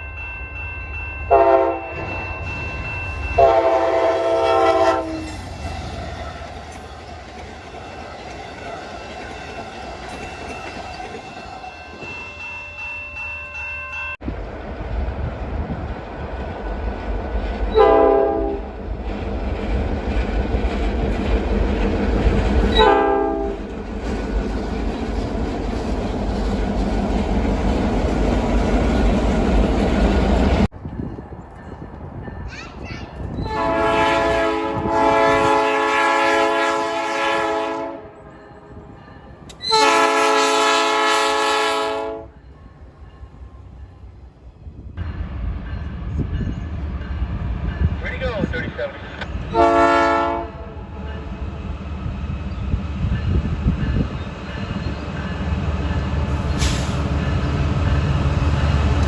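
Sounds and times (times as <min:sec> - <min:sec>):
train rumbling past: 0:00.0 - 0:59.0
locomotive air horn chord: 0:01.3 - 0:01.9, 0:03.4 - 0:05.4, 0:17.8 - 0:18.6, 0:22.7 - 0:23.6, 0:33.5 - 0:38.2, 0:39.6 - 0:42.4, 0:49.5 - 0:50.7
short train horn blasts: 0:01.3 - 0:01.9, 0:03.4 - 0:05.4, 0:17.8 - 0:18.6, 0:22.7 - 0:23.6, 0:33.4 - 0:38.2, 0:39.6 - 0:42.4, 0:49.5 - 0:50.8.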